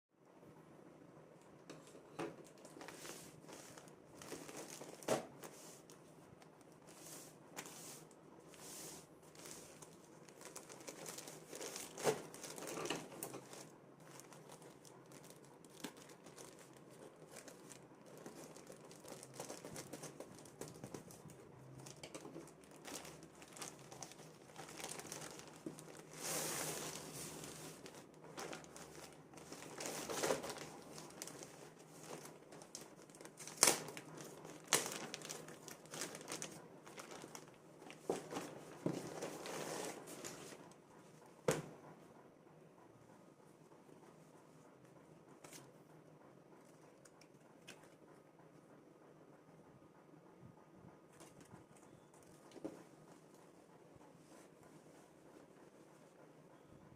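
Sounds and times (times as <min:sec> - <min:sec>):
packaging crinkling and tearing: 0:02.4 - 0:05.7, 0:09.3 - 0:40.5.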